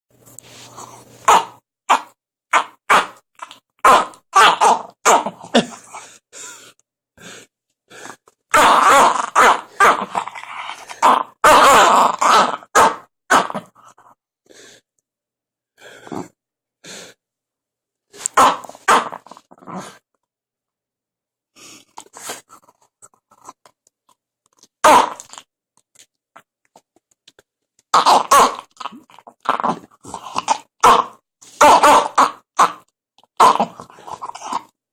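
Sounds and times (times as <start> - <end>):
dog making short noisy bursts: 1.2 - 3.2, 8.5 - 13.7, 18.2 - 20.0, 24.8 - 25.3, 30.8 - 32.8.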